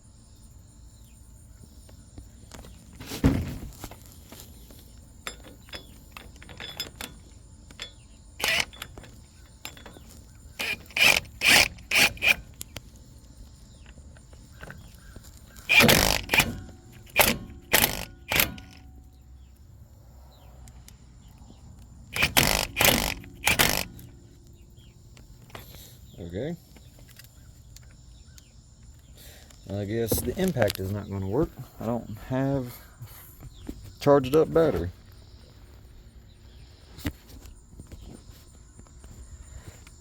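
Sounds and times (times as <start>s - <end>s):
impact wrench bursts: 5.2s - 12.8s, 14.5s - 19.2s, 22.0s - 25.8s.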